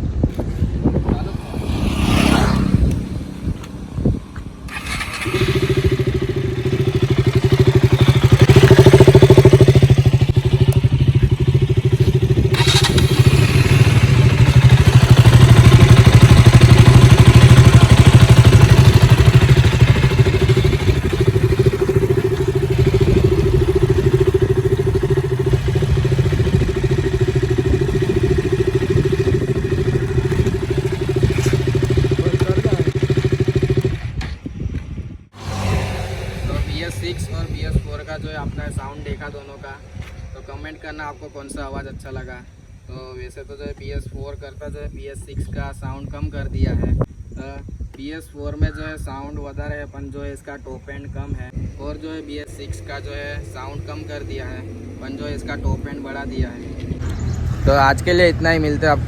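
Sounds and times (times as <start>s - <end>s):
single-cylinder engine running: 4.7s - 34.2s.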